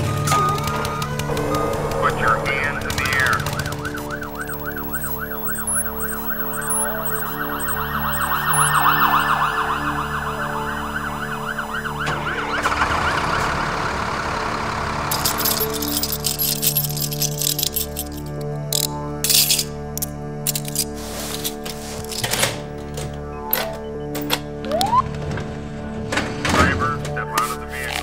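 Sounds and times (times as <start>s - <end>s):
emergency siren yelping: 0.0s - 18.0s, 23.1s - 25.3s.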